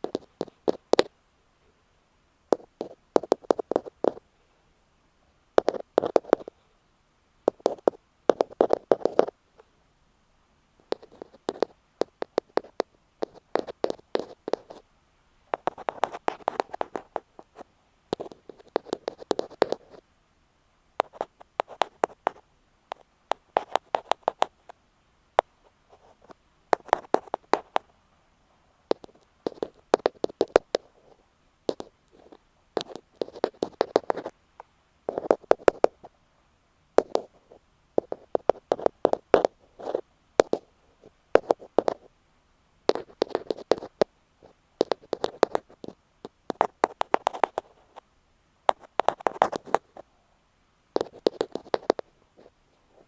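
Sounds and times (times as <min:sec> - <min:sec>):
ear pick tapping and scratching: 0:00.0 - 0:01.1, 0:02.5 - 0:04.2, 0:05.6 - 0:06.6, 0:07.5 - 0:09.4, 0:10.8 - 0:14.8, 0:15.5 - 0:20.0, 0:21.0 - 0:24.8, 0:25.4 - 0:27.9, 0:28.9 - 0:34.3, 0:35.1 - 0:36.1, 0:37.0 - 0:40.7, 0:41.4 - 0:42.1, 0:42.9 - 0:48.0, 0:48.7 - 0:50.0, 0:51.0 - 0:53.0.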